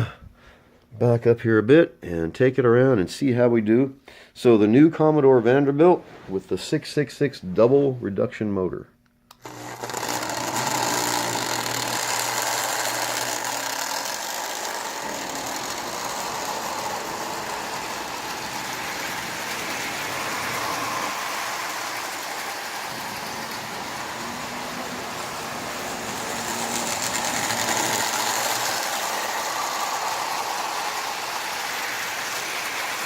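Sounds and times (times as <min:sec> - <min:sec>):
toy train motor whirring: 0:09.3 - 0:33.0
wheels rattling on rails: 0:14.5 - 0:33.0.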